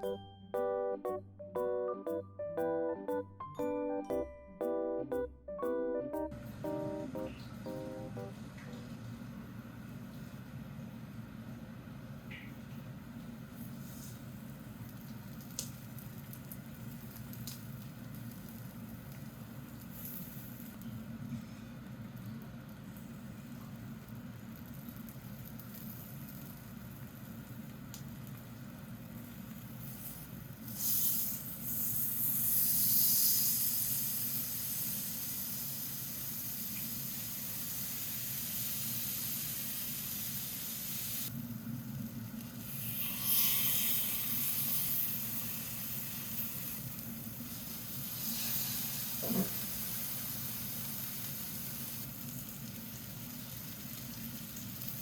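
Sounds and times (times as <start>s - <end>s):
food sizzling in a hot pan: 13.7s - 21.0s, 22.0s - 55.0s.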